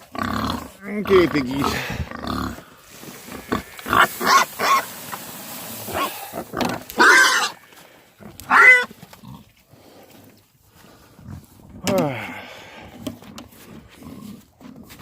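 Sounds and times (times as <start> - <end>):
pigs squealing and grunting: 0.0 - 4.9, 5.9 - 7.6, 8.2 - 9.5.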